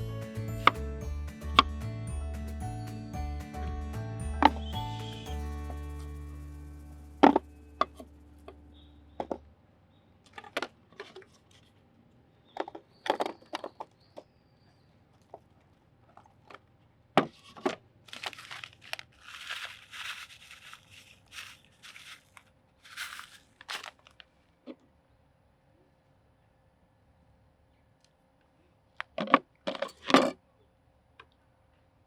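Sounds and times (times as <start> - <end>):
crinkling and rustling: 10.2 - 11.8, 16.1 - 24.7.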